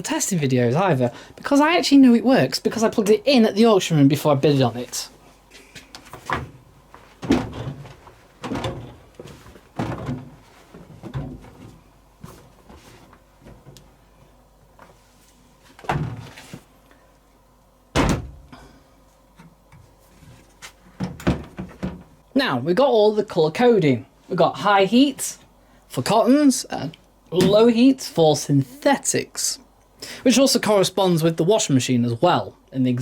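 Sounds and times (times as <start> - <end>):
dryer door slamming shut: 7.2 - 7.8, 15.9 - 16.3, 17.9 - 18.5, 27.4 - 27.7.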